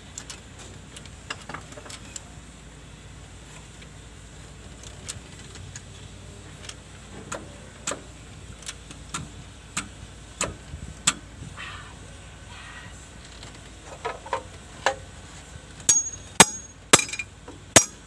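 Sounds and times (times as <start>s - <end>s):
low steady hum: 0.0s - 18.0s
metal tool clinks: 15.9s - 18.0s.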